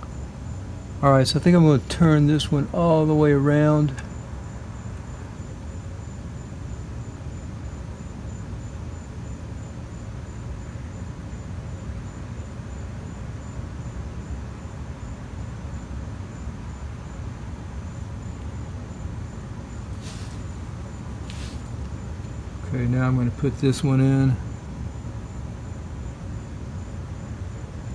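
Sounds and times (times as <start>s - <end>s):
steady low rumble: 19.8s - 24.9s
short scraping noises: 20.0s - 21.8s.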